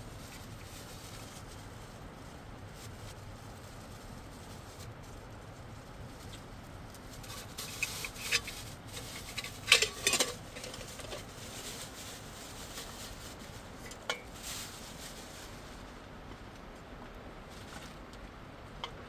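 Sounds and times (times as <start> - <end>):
steady low hiss: 0.0 - 19.0
hard objects clicking and clattering: 7.3 - 11.3.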